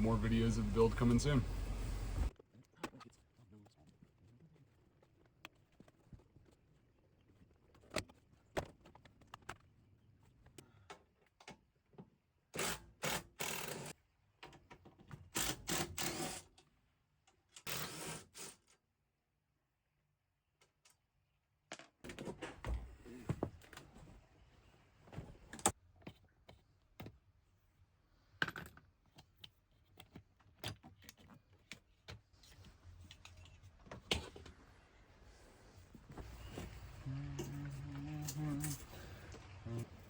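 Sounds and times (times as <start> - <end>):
hand tools and metal parts clinking: 36.3 - 40.0.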